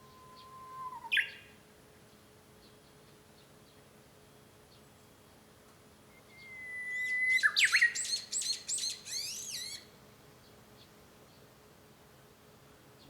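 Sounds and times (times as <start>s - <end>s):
bird singing whistled notes: 0.0s - 1.6s, 6.1s - 9.9s.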